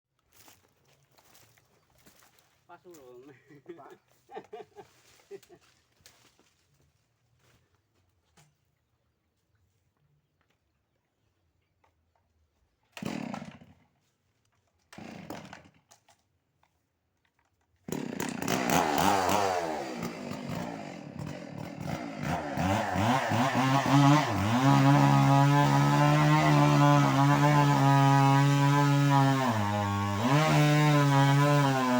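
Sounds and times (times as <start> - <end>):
chainsaw starting and running: 12.9 - 14.1, 14.8 - 16.2, 17.5 - 31.9.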